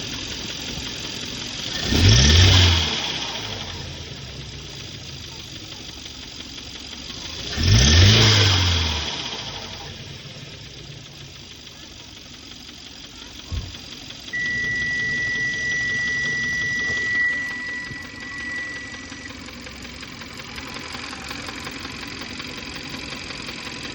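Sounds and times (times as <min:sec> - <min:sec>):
car engine idling after rev: 0:00.0 - 0:23.9
engine knock: 0:00.0 - 0:23.9
thump: 0:13.5 - 0:13.7
high-pitched tone: 0:14.3 - 0:21.7.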